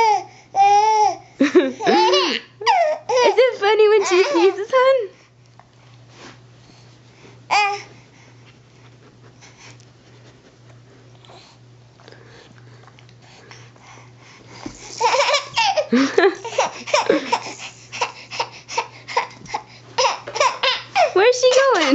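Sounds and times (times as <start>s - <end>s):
baby laughing: 0.0s - 4.6s, 15.0s - 21.9s
faint steady hum: 0.0s - 21.9s.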